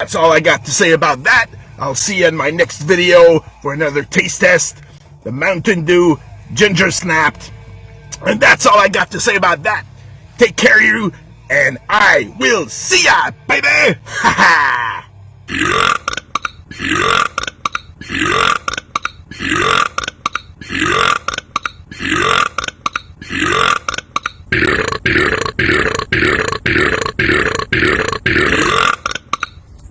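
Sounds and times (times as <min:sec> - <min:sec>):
person burping: 0:14.0 - 0:29.6.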